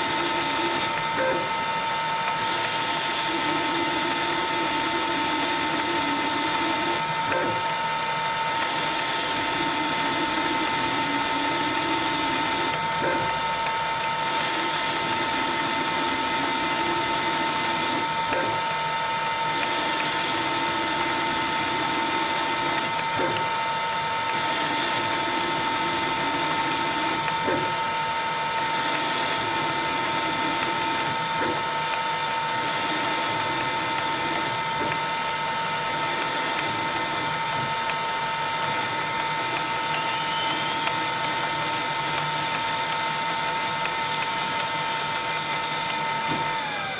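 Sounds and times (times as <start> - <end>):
lathe motor whining: 0.0 - 46.9.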